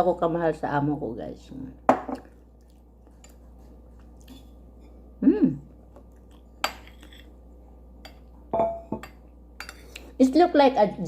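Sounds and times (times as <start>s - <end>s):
person chewing soft food: 2.2s - 4.8s, 5.8s - 8.5s.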